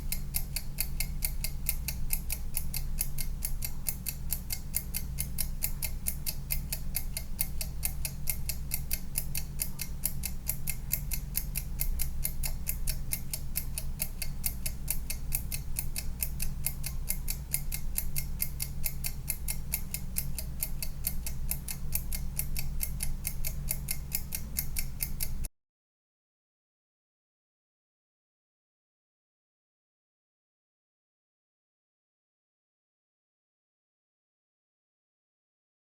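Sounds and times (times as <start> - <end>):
kitchen timer ticking: 0.0 - 25.5
low steady hum: 0.0 - 25.5.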